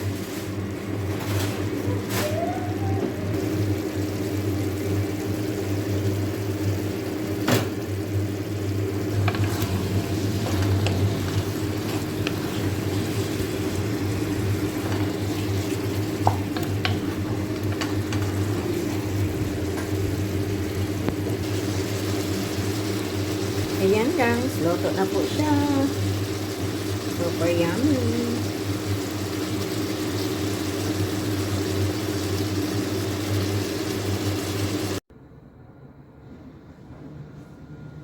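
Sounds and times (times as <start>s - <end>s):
pot simmering and sizzling: 0.0s - 35.0s
steady low hum: 3.8s - 29.0s.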